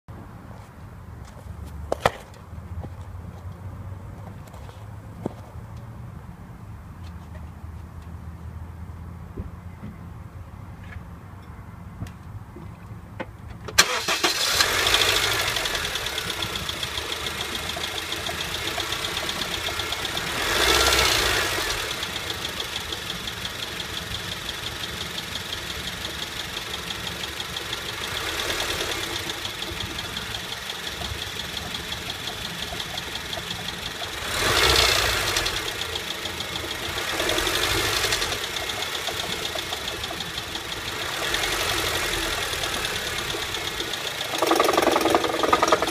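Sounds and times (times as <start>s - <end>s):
car engine starting and running: 13.4s - 45.9s
rapid ticking knock: 27.4s - 34.2s, 43.0s - 45.9s.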